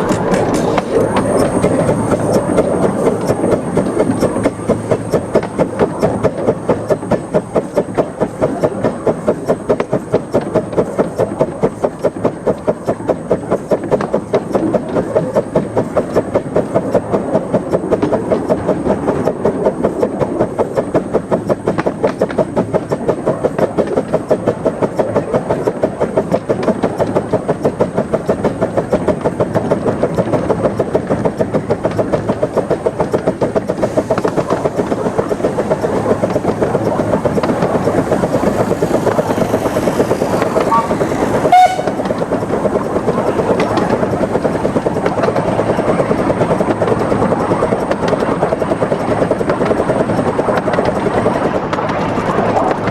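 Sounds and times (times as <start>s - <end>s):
steam locomotive exhaust beating: 0.0s - 52.9s
steam whistle: 40.7s - 42.1s.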